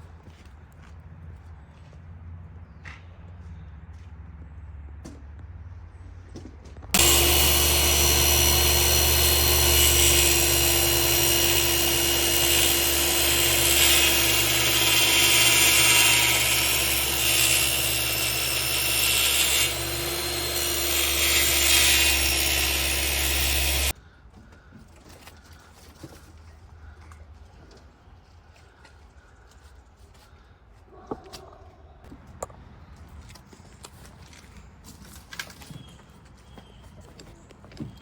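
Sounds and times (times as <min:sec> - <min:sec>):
electric power tool running: 0:07.0 - 0:23.9.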